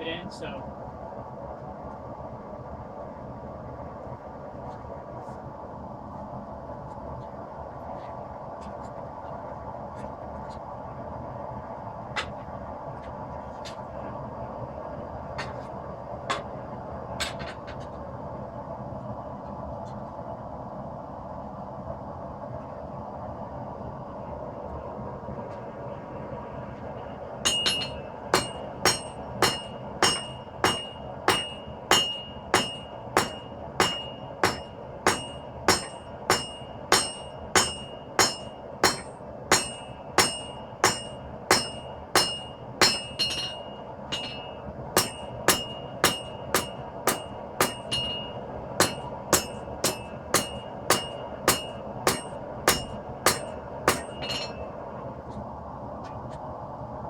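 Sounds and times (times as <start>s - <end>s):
gas forge roaring: 24.8s - 55.1s
hammer ringing on anvil: 27.5s - 54.8s.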